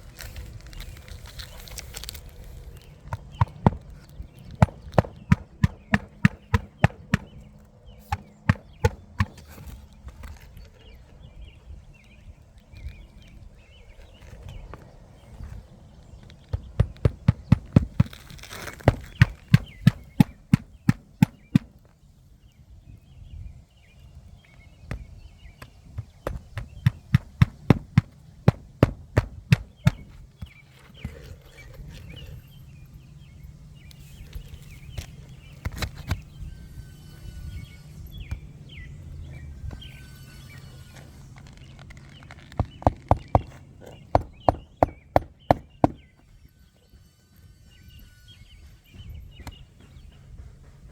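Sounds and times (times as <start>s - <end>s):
hammer striking roofing nails: 3.1s - 9.8s, 16.5s - 21.8s, 25.6s - 31.3s, 42.6s - 46.1s.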